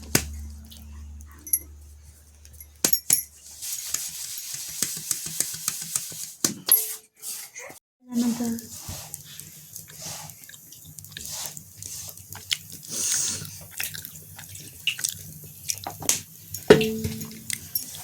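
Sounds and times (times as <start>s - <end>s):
short pitched sound: 0.0s - 2.0s
steady low hum: 0.0s - 2.8s
wet squishing of food handling: 8.2s - 16.5s.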